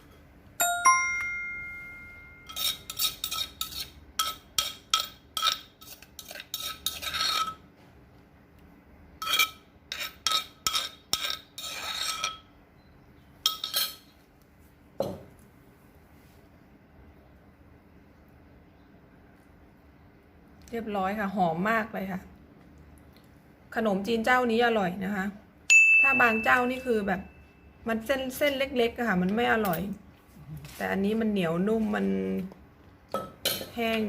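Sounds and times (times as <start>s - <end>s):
metal spoon clinking on dish: 0.6s - 7.6s, 13.4s - 14.1s.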